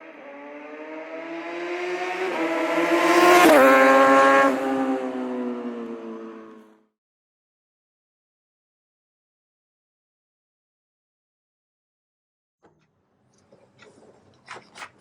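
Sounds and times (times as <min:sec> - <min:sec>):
motorcycle passing at speed: 0:00.0 - 0:06.9.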